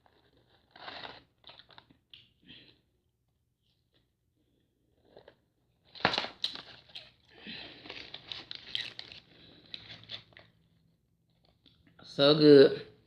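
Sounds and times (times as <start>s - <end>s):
food packaging crinkling: 0.0s - 2.0s, 5.0s - 10.6s
sharp crunch of eating: 0.0s - 2.8s, 4.9s - 10.6s.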